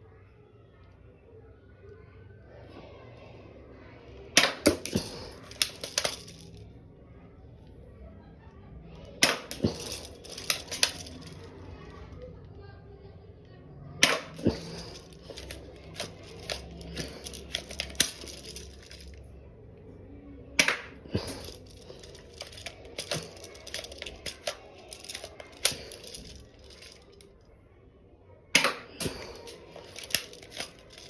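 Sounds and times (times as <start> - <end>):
plastic toy gun clicks: 4.4 - 6.5, 9.2 - 11.5, 14.0 - 19.2, 20.6 - 27.2, 28.6 - 31.0
toy pistol snaps: 4.4 - 6.5, 9.2 - 11.4, 14.0 - 19.1, 20.6 - 27.2, 28.6 - 31.0.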